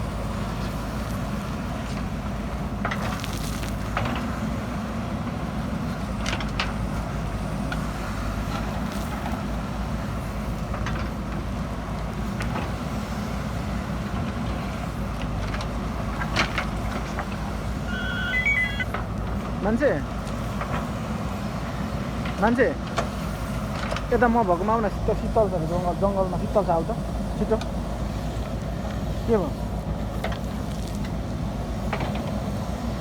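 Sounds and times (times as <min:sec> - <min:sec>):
diesel engine running: 0:03.6 - 0:33.0
short high tones: 0:17.8 - 0:18.9.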